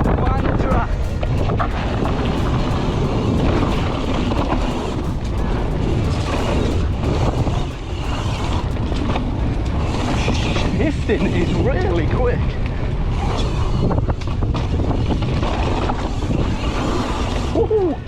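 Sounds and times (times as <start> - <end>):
wind buffeting microphone: 0.0 - 18.0
mountain bike tyre rumble on trail: 9.0 - 17.6.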